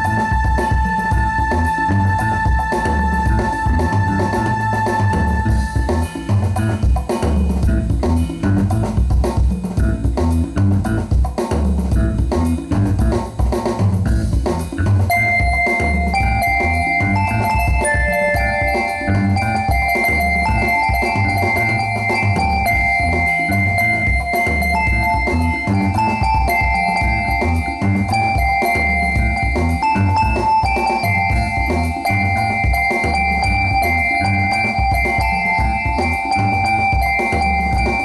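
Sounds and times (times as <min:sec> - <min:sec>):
music with bass and drums beat: 0:00.0 - 0:38.0.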